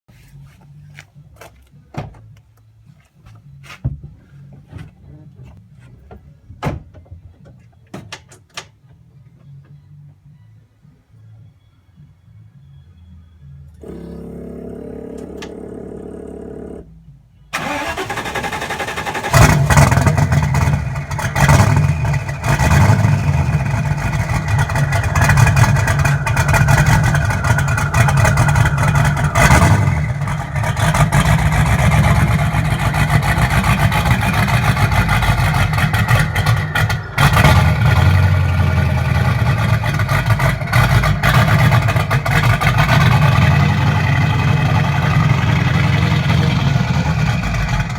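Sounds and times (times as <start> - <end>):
engine revving: 13.7 - 16.9, 17.6 - 47.9
engine cranking and starting: 17.5 - 47.9.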